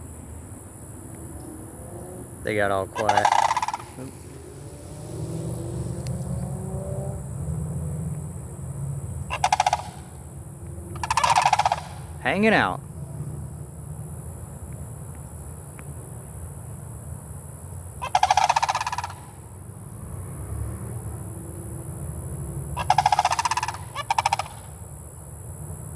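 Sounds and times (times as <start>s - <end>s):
cranes honking: 2.2s - 6.7s, 9.3s - 12.8s, 22.8s - 24.6s.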